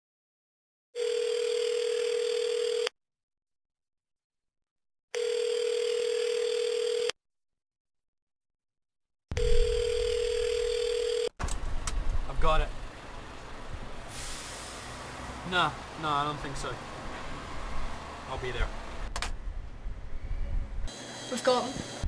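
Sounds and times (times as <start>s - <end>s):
telephone ringing tone: 1.0s - 2.9s, 5.2s - 7.2s, 9.3s - 11.3s.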